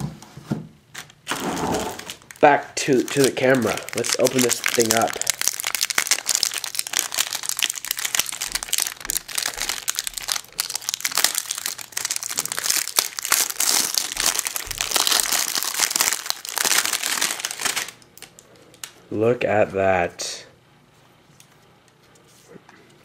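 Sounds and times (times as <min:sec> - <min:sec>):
packaging crinkling: 0:00.9 - 0:19.0.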